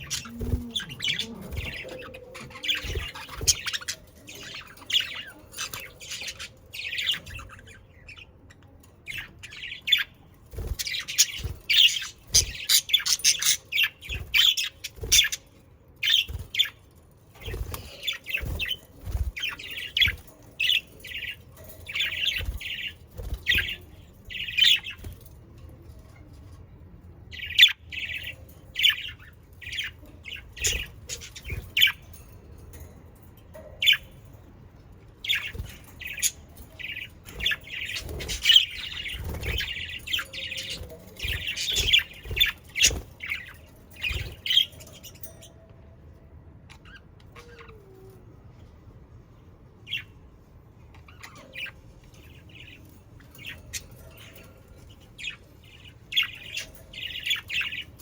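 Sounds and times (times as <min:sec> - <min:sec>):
budgerigars chirping and squawking: 0:00.0 - 0:08.4, 0:09.1 - 0:15.4, 0:27.4 - 0:32.2, 0:35.2 - 0:45.3, 0:46.7 - 0:47.9, 0:50.9 - 0:58.0.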